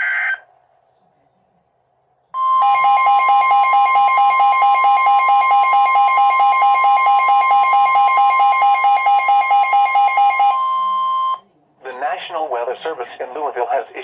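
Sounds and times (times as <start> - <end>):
loud high alarm tone: 2.4 - 11.4
low pulsing beep: 2.4 - 11.4.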